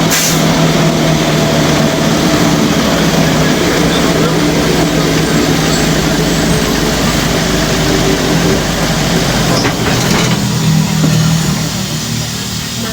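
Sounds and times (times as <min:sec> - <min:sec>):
diesel engine running: 0:00.0 - 0:12.9.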